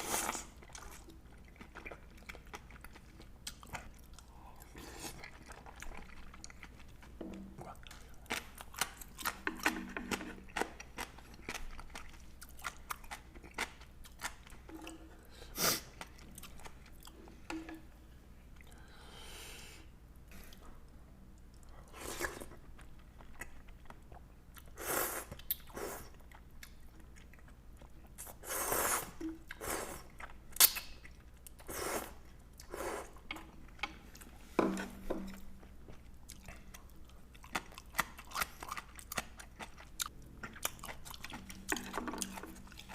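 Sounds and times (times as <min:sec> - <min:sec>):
person chewing food: 0:00.0 - 0:18.0, 0:21.4 - 0:42.9
wet mouth clicks: 0:30.6 - 0:31.2.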